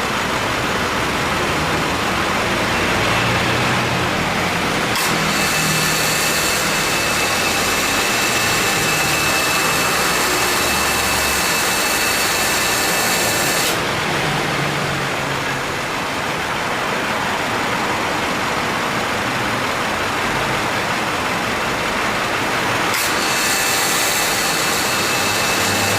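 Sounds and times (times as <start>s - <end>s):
compressor hiss and whine: 4.1s - 14.2s, 21.8s - 25.9s.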